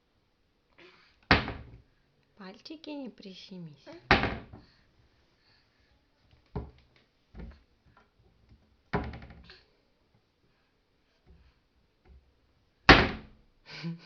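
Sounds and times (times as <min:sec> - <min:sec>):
door banging shut: 0:01.3 - 0:01.8, 0:04.1 - 0:04.6, 0:12.9 - 0:13.3
door rattle: 0:01.3 - 0:01.8, 0:04.1 - 0:04.6, 0:09.0 - 0:09.4, 0:12.9 - 0:13.3.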